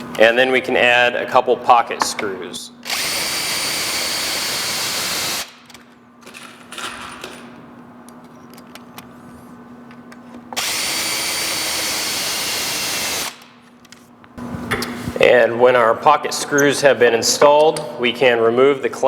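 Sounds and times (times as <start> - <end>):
power drill driving screws: 2.9 - 5.6, 10.6 - 13.4.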